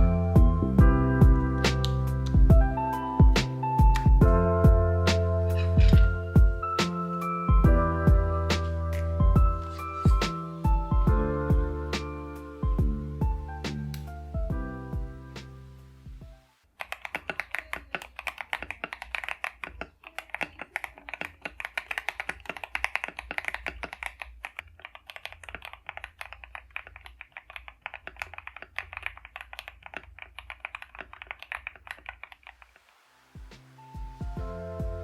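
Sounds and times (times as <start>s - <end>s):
fast typing on mechanical keyboard: 16.8s - 32.8s.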